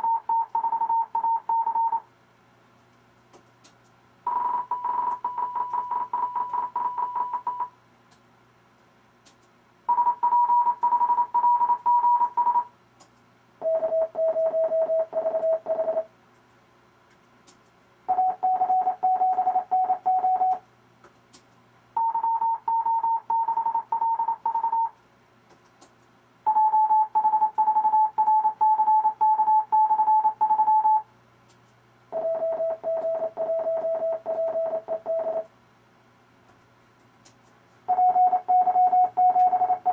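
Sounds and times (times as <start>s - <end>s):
morse code tones: 4.3s - 7.7s, 9.9s - 12.7s, 13.6s - 16.0s, 18.1s - 20.6s, 22.0s - 24.9s, 26.5s - 31.0s, 32.1s - 35.5s, 37.9s - 39.9s.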